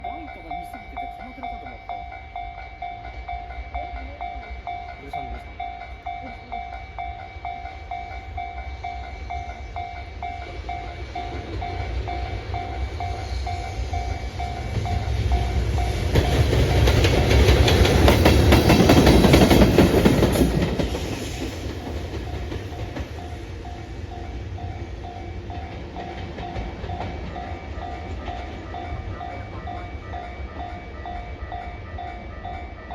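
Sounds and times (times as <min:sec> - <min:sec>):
level crossing bell ringing: 0:00.0 - 0:12.8
electric locomotive passing: 0:00.0 - 0:32.9
wheel clatter on rails: 0:14.0 - 0:23.4, 0:25.4 - 0:30.7.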